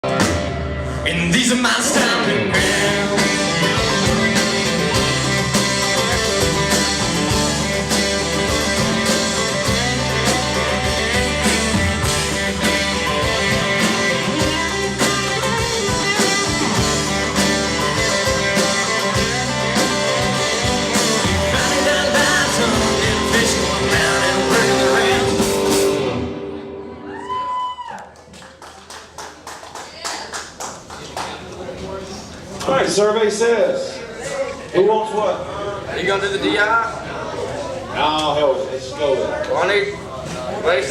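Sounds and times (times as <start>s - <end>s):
country-rock band with singing: 0.0s - 27.4s.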